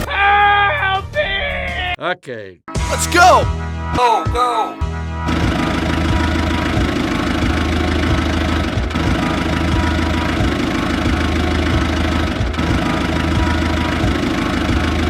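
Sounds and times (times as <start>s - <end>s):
vehicle engine chugging: 5.3s - 15.0s.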